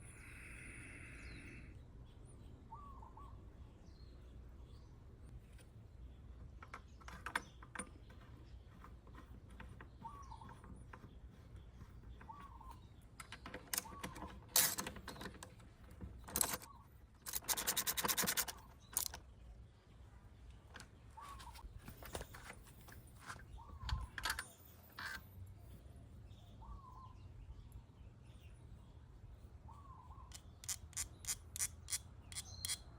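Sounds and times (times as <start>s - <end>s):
bird calling: 2.7s - 3.4s, 8.7s - 14.6s, 21.1s - 22.5s
ratchet wrench clicking: 16.3s - 19.2s, 30.3s - 32.9s.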